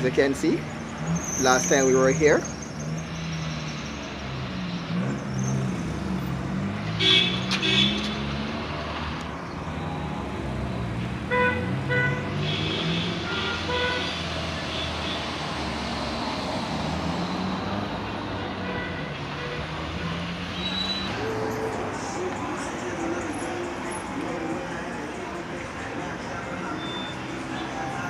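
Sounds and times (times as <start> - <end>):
road traffic: 0.0 - 28.0
car horns tooting: 6.9 - 8.2, 11.3 - 15.3, 18.4 - 19.8.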